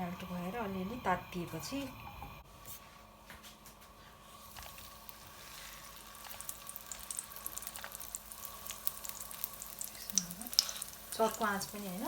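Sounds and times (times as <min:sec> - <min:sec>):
butter sizzling in a pan: 0:04.4 - 0:12.0.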